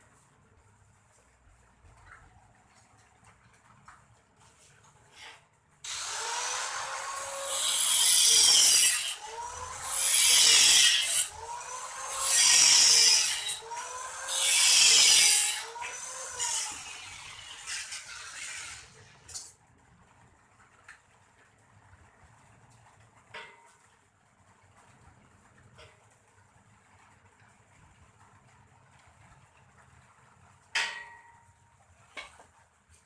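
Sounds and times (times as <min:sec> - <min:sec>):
power tool motor running: 0:05.8 - 0:19.0
power tool grinding steel tube: 0:05.9 - 0:19.2.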